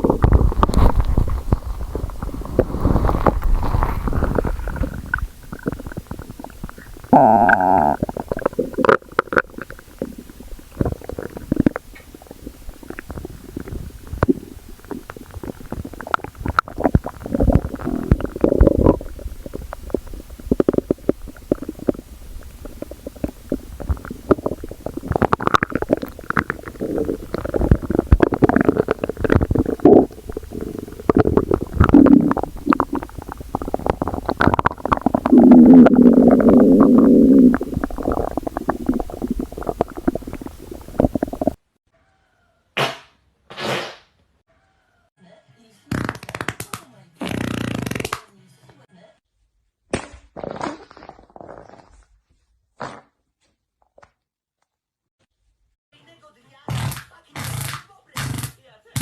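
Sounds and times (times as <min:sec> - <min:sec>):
stomach growling and gurgling: 0:00.0 - 0:41.6, 0:50.0 - 0:52.2.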